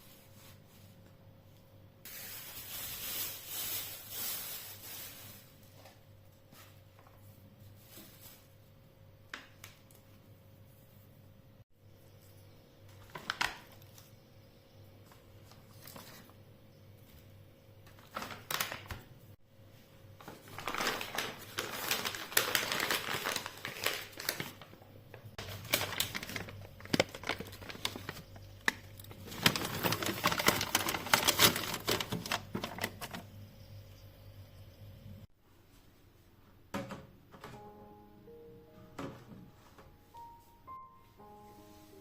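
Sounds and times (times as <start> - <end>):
materials rustling and crinkling: 2.1 - 10.1, 12.9 - 14.2, 15.0 - 19.2, 19.8 - 33.3.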